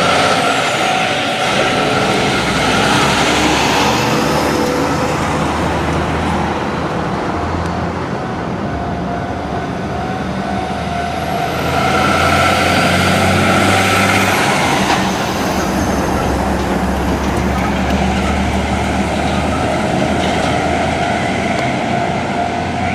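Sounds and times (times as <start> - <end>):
diesel truck engine hum: 0.0 - 22.9.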